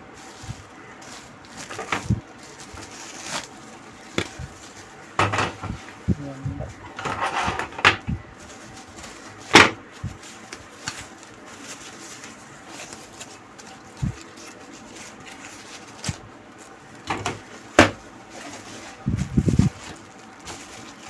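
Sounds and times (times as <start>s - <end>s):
hard objects knocking on workbench: 5.2s - 5.8s.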